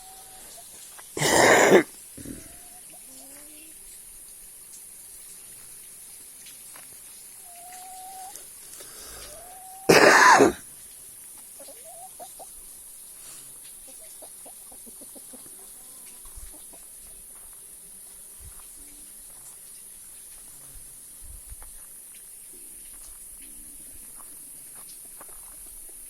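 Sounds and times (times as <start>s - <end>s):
chicken clucking: 7.4s - 8.4s, 9.2s - 9.9s, 11.6s - 12.6s, 13.8s - 17.2s
chicken squawking: 7.4s - 8.4s, 9.2s - 10.6s, 11.6s - 12.5s.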